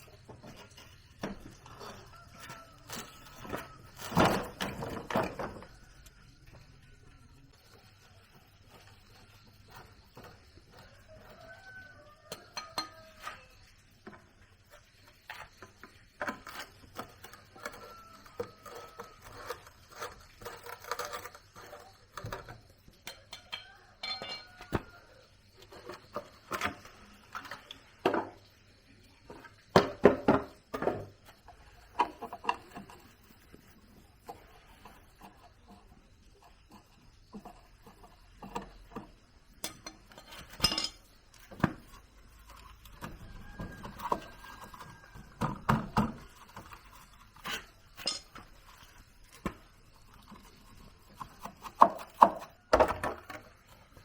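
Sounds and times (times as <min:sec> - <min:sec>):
metallic clinks and knocks: 0:23.1 - 0:25.0, 0:39.6 - 0:42.5, 0:45.9 - 0:48.6.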